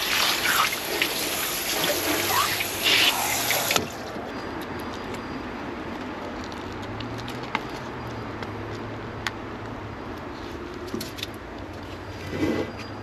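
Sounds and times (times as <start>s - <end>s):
tap water running: 0.0s - 4.0s.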